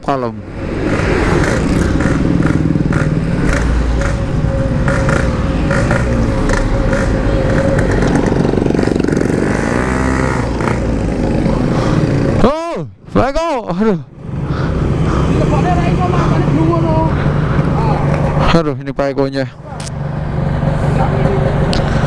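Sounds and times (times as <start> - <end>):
motorcycle engine running: 0.8 - 12.4.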